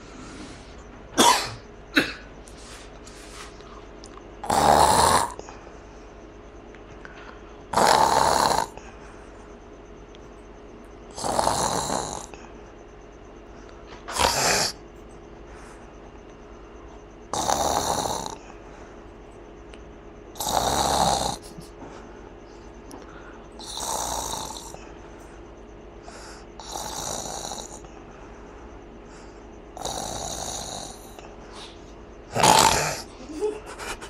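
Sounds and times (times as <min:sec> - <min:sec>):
loud snoring: 0:04.4 - 0:05.4, 0:07.7 - 0:08.8, 0:11.1 - 0:12.4, 0:14.1 - 0:14.8, 0:17.3 - 0:18.4, 0:20.4 - 0:21.6, 0:23.6 - 0:24.8, 0:26.6 - 0:27.8, 0:29.8 - 0:31.2, 0:32.3 - 0:33.1.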